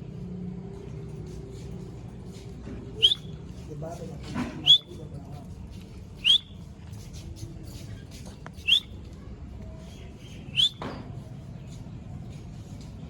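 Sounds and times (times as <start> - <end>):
parrot whistled calls: 3.0 - 3.3, 6.2 - 6.6, 8.6 - 8.9, 10.5 - 10.8.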